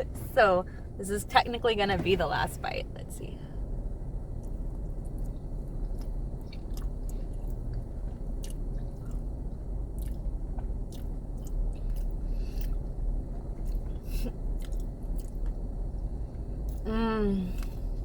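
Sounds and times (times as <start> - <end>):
person chewing with wet smacks: 4.4 - 16.9.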